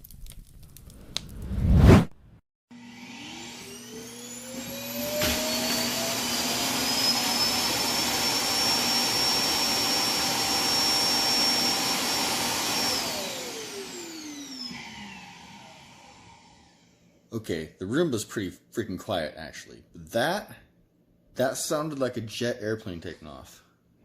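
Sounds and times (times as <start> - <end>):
suction motor whining and rushing: 2.8 - 16.9.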